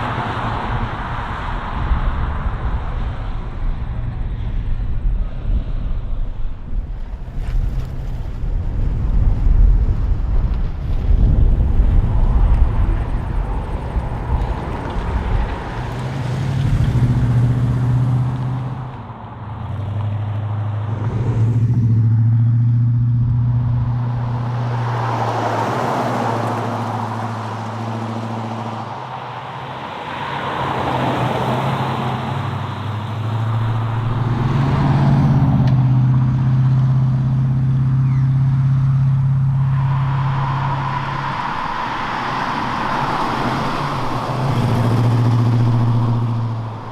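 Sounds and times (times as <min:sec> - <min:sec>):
tyre and wind noise: 0:00.0 - 0:19.2
car engine driving: 0:00.0 - 0:46.9.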